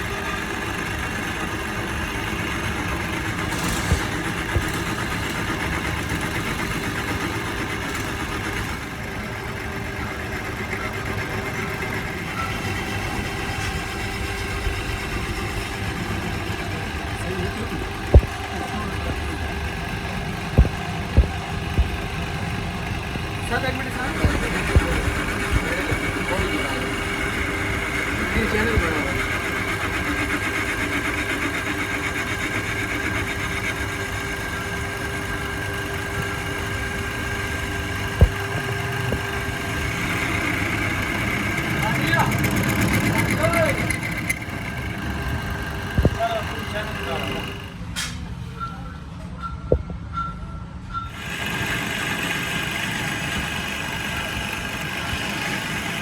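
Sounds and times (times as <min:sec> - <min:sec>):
machine humming: 0:00.0 - 0:48.0
sharp knock: 0:18.1 - 0:18.4.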